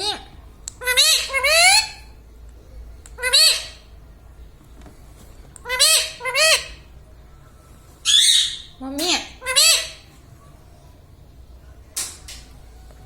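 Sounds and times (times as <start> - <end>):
parrot squawking: 0.0 - 2.1, 3.2 - 3.9, 5.6 - 6.9, 8.0 - 10.1.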